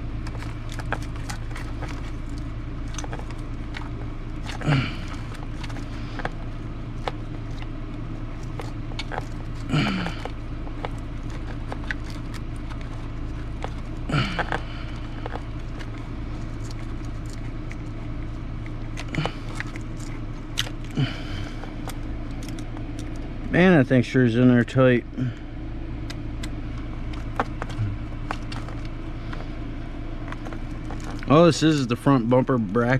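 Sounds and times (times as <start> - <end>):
low hum: 0.0 - 32.9
person grunting: 4.6 - 5.3, 9.7 - 10.3, 14.1 - 14.8, 27.8 - 28.0.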